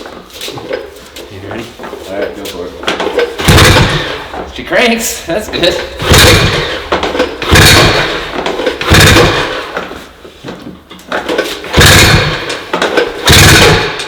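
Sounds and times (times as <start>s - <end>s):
snowmobile engine cranking: 0.0s - 14.0s.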